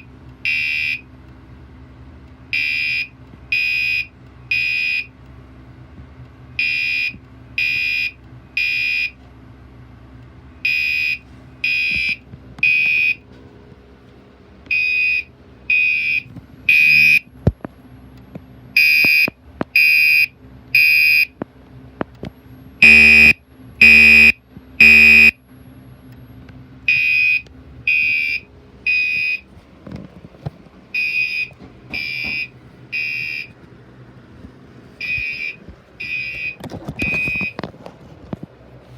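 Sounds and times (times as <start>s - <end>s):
fire alarm horn blasts: 0.0s - 1.1s, 2.5s - 5.1s, 6.6s - 9.2s, 10.6s - 13.2s, 14.7s - 17.3s, 18.8s - 21.3s, 22.8s - 25.4s, 26.9s - 29.5s, 30.9s - 33.6s, 35.0s - 37.6s.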